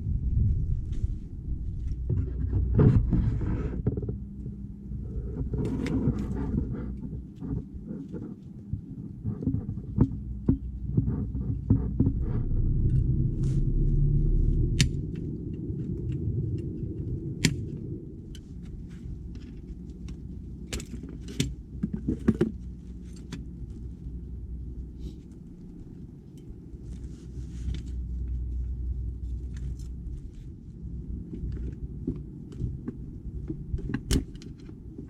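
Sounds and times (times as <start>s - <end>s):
low rumble: 0.0s - 7.9s, 9.5s - 20.7s.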